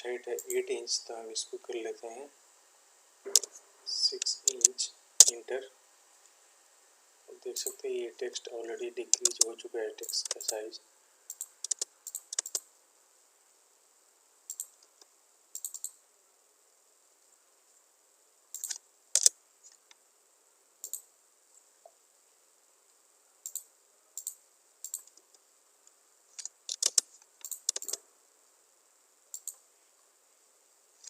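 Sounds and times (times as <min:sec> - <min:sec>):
mouse and keyboard clicks: 0:04.2 - 0:05.4, 0:09.1 - 0:10.6, 0:11.3 - 0:12.6, 0:15.6 - 0:16.0, 0:18.6 - 0:19.3, 0:23.5 - 0:25.3, 0:26.4 - 0:28.0, 0:29.4 - 0:29.6.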